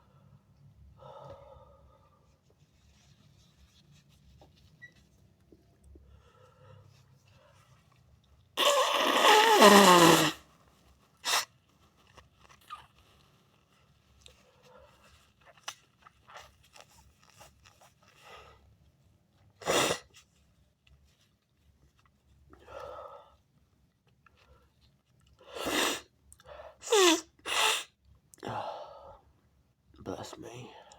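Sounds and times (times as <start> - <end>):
person sneezing: 8.6 - 10.4, 11.2 - 11.5, 19.6 - 20.1, 25.5 - 26.0, 26.8 - 27.9
sniffs: 11.2 - 11.7, 19.6 - 20.3, 25.4 - 26.1, 26.8 - 28.0
sharp burst of breath: 26.8 - 27.9.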